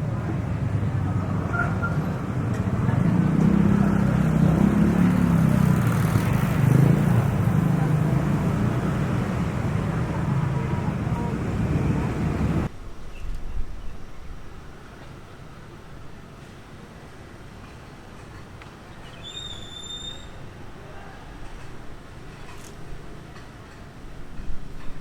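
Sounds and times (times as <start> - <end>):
motor vehicle rumble: 0.0 - 12.7.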